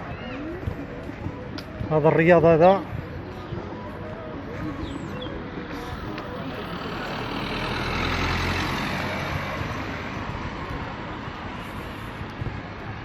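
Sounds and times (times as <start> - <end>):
vehicle driving past: 5.6 - 12.2.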